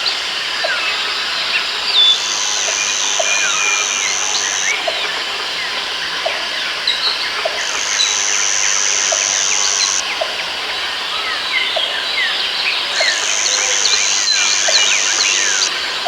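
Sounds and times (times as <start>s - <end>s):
insect high buzz: 0.0s - 16.0s
birds chirping and whistling: 13.4s - 15.7s.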